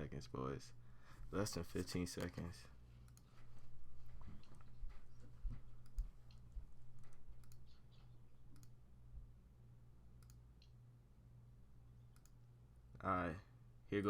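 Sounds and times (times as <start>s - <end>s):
low electrical hum: 0.0s - 14.0s
mouse and keyboard clicks: 7.1s - 8.7s.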